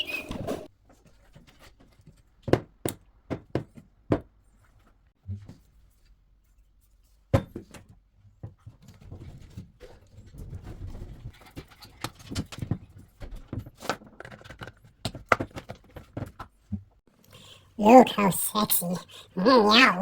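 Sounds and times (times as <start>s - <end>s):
plastic parts clicking and knocking: 11.5s - 16.7s.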